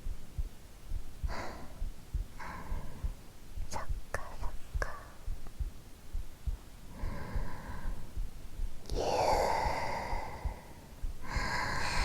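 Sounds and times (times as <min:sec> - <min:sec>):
soft heartbeat thumps: 0:00.0 - 0:12.0
woman whispering: 0:03.6 - 0:05.4, 0:08.8 - 0:10.7.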